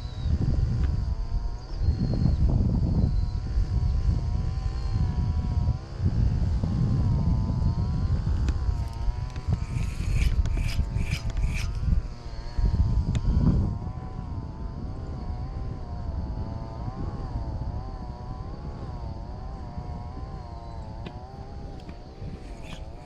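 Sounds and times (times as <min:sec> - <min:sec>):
engine droning: 0:03.0 - 0:23.0
rubbing scrapes: 0:09.5 - 0:11.8, 0:22.3 - 0:23.0.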